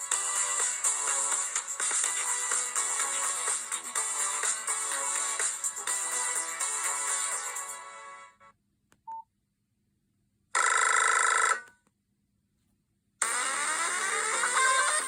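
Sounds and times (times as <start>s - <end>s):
ringtone with rising sweeps: 13.3s - 15.0s.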